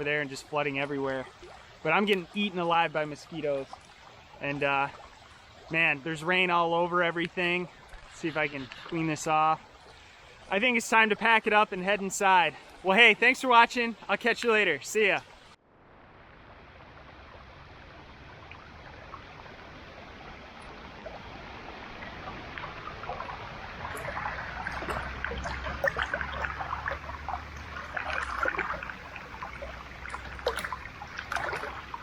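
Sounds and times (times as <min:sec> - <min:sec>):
gurgling splashes: 0:00.0 - 0:13.0, 0:17.0 - 0:32.0
floodwater flowing: 0:00.0 - 0:32.0.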